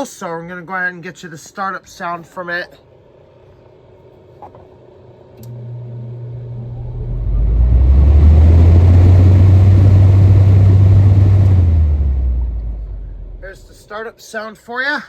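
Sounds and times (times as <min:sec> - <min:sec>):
air conditioner fan motor hum: 0:00.0 - 0:14.2
blower rushing air: 0:05.5 - 0:13.8.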